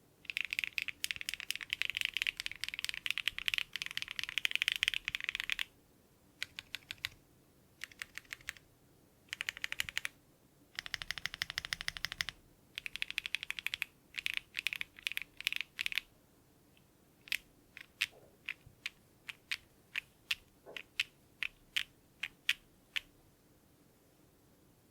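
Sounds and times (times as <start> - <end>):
mechanical keyboard keystrokes: 0.3 - 5.7, 6.4 - 7.2, 7.8 - 8.6, 9.3 - 10.1, 10.8 - 16.1.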